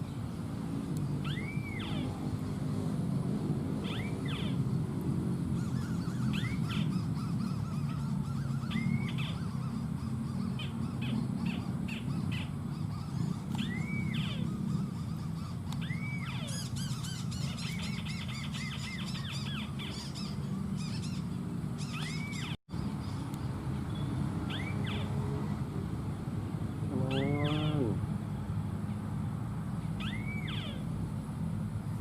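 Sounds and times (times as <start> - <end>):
fast bird chirps: 5.6 - 23.2.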